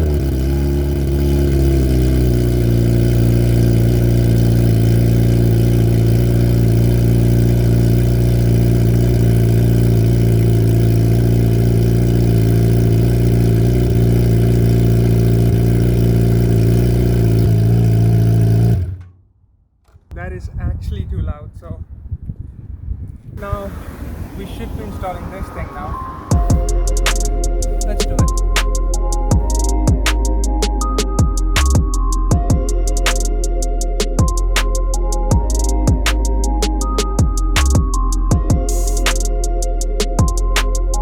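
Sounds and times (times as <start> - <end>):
motorcycle engine idling loudly: 0.0 - 19.1, 26.3 - 41.0.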